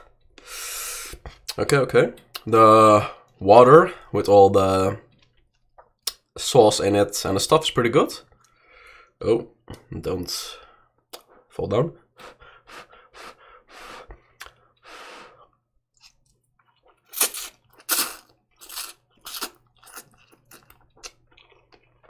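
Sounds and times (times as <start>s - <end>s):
person chewing and slurping noodles: 16.0s - 22.0s.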